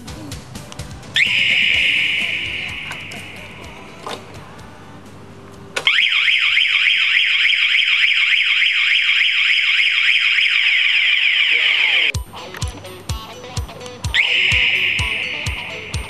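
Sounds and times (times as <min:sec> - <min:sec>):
warbling alarm siren: 0:01.2 - 0:03.9, 0:05.8 - 0:12.2, 0:14.1 - 0:16.0.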